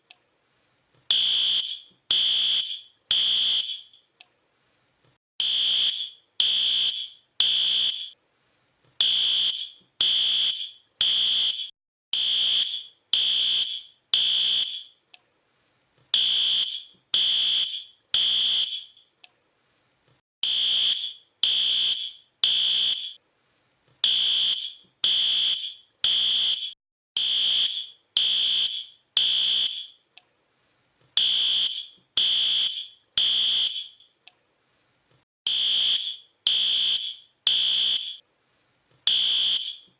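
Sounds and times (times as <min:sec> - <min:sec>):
fire alarm beeping: 0:01.1 - 0:04.0, 0:05.4 - 0:08.2, 0:09.0 - 0:15.0, 0:16.2 - 0:19.0, 0:20.4 - 0:23.2, 0:24.0 - 0:30.0, 0:31.2 - 0:34.1, 0:35.5 - 0:38.2, 0:39.1 - 0:39.9.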